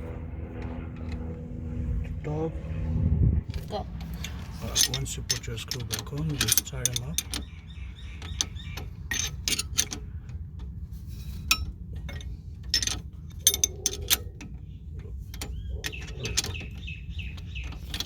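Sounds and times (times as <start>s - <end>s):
metal clinks and knocks: 3.5s - 10.7s, 11.3s - 14.7s
ratchet wrench clicking: 4.0s - 10.0s.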